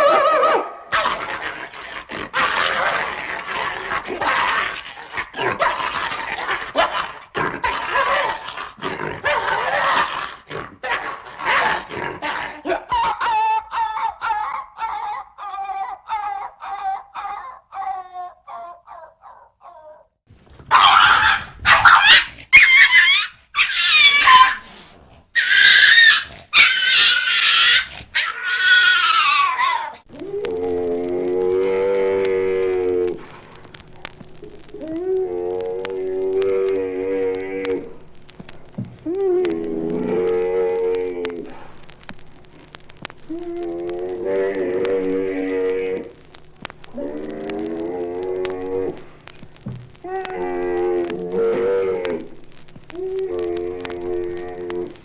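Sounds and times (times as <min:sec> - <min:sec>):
loud high dog calls: 0:00.0 - 0:01.8, 0:20.6 - 0:30.1
dog barking: 0:20.7 - 0:24.6, 0:25.4 - 0:28.5.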